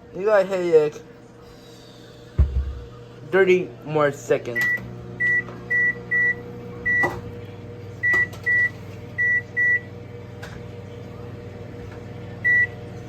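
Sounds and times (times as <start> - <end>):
microwave oven humming: 0.0 - 13.0
keypad beeps: 4.6 - 7.1, 8.0 - 9.8, 12.4 - 12.7.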